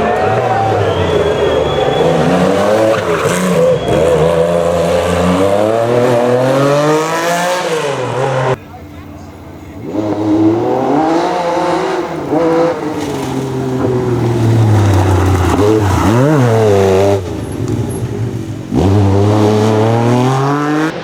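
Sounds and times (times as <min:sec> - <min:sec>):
rally car engine revving: 0:00.0 - 0:21.0.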